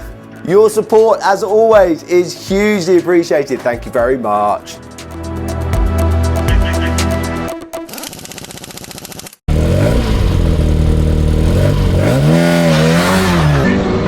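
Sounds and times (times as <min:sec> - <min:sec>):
car engine revving: 0:09.5 - 0:14.0.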